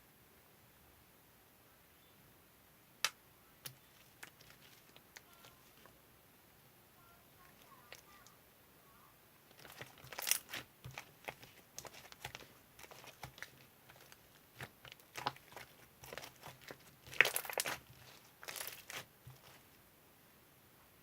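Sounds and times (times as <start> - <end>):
crinkling and crackling handling: 3.6 - 6.0, 7.3 - 8.4, 9.4 - 19.8.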